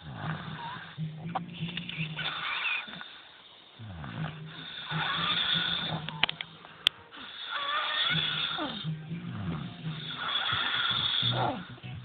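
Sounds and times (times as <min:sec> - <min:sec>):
person snoring: 0:00.0 - 0:01.0, 0:03.8 - 0:06.2, 0:07.2 - 0:11.8.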